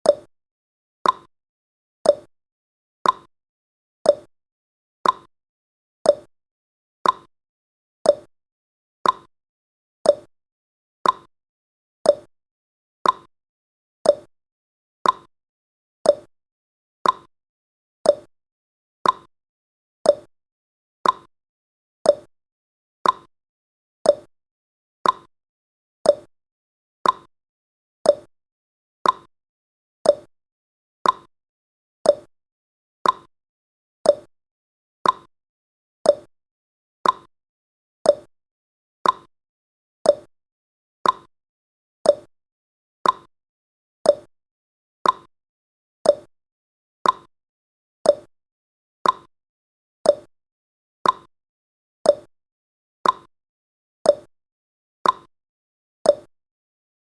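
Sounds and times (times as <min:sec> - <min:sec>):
timer ticking: 0:00.0 - 0:00.3, 0:01.0 - 0:01.3, 0:02.1 - 0:02.3, 0:03.0 - 0:03.3, 0:04.1 - 0:04.3, 0:05.0 - 0:05.3, 0:06.1 - 0:06.3, 0:07.0 - 0:07.3, 0:08.1 - 0:08.3, 0:09.0 - 0:09.3, 0:10.1 - 0:10.3, 0:11.0 - 0:11.3, 0:12.1 - 0:12.3, 0:13.0 - 0:13.3, 0:14.0 - 0:14.3, 0:15.0 - 0:15.3, 0:16.1 - 0:16.3, 0:17.0 - 0:17.3, 0:18.1 - 0:18.3, 0:19.0 - 0:19.3, 0:20.1 - 0:20.3, 0:21.0 - 0:21.3, 0:22.1 - 0:22.3, 0:23.0 - 0:23.3, 0:24.1 - 0:24.3, 0:25.0 - 0:25.3, 0:26.0 - 0:26.3, 0:27.0 - 0:27.3, 0:28.0 - 0:28.3, 0:29.0 - 0:29.3, 0:30.0 - 0:30.3, 0:31.0 - 0:31.3, 0:32.0 - 0:32.3, 0:33.0 - 0:33.3, 0:34.0 - 0:34.3, 0:35.0 - 0:35.3, 0:36.0 - 0:36.3, 0:37.0 - 0:37.3, 0:38.1 - 0:38.3, 0:39.0 - 0:39.3, 0:40.0 - 0:40.3, 0:41.0 - 0:41.3, 0:42.0 - 0:42.3, 0:43.0 - 0:43.3, 0:44.1 - 0:44.3, 0:45.0 - 0:45.3, 0:46.0 - 0:46.3, 0:47.0 - 0:47.3, 0:48.1 - 0:48.3, 0:49.0 - 0:49.3, 0:50.1 - 0:50.3, 0:51.0 - 0:51.3, 0:52.1 - 0:52.3, 0:53.0 - 0:53.3, 0:54.1 - 0:54.3, 0:55.0 - 0:55.3, 0:56.1 - 0:56.3.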